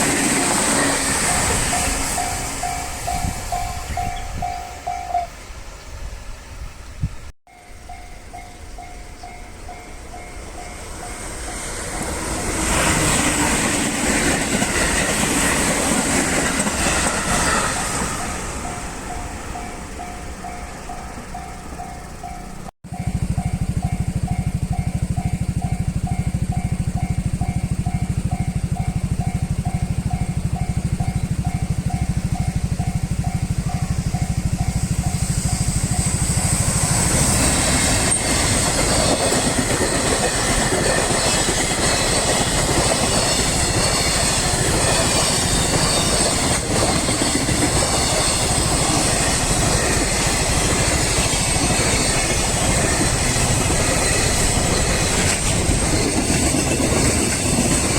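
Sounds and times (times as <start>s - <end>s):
rail clatter: 0.0s - 5.3s, 9.7s - 57.9s
level-crossing warning bell: 0.0s - 6.4s, 7.5s - 57.9s
passing train rumble: 0.0s - 57.9s
high steady whine: 16.4s - 57.4s.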